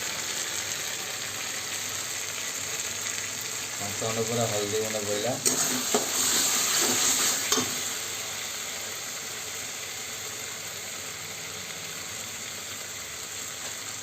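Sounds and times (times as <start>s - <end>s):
curry sizzling in hot oil: 0.0s - 14.0s
spoon knocking on pan: 6.8s - 7.8s.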